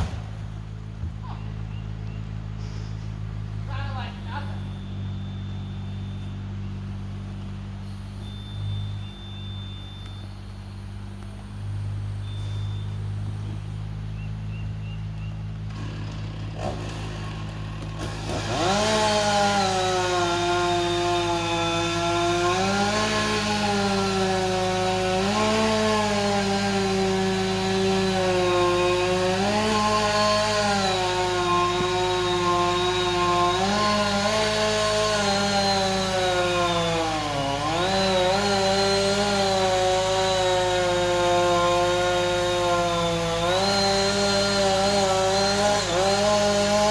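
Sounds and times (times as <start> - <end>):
chainsaw cutting wood: 0.0 - 1.2, 15.2 - 46.9.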